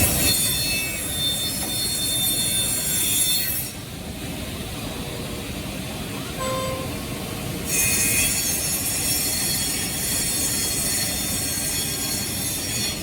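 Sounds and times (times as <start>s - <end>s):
low machine noise: 3.8s - 8.8s.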